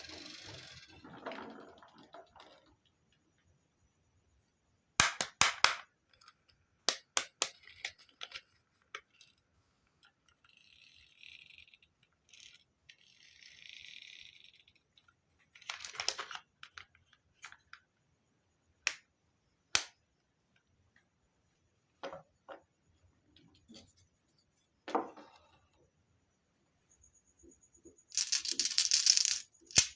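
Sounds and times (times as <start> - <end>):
marbles rolling: 0.0 - 2.8, 28.1 - 29.9
marbles clicking on wooden track: 28.1 - 29.9.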